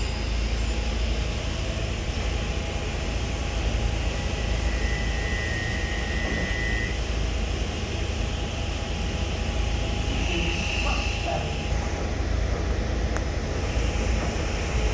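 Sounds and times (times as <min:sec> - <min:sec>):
train rumbling: 0:00.0 - 0:14.9.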